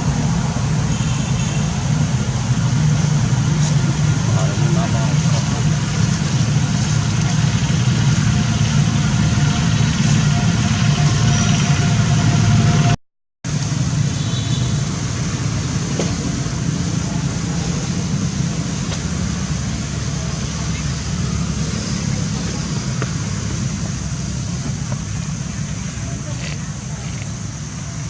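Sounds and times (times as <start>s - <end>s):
low rumble of road traffic: 0.0s - 28.0s.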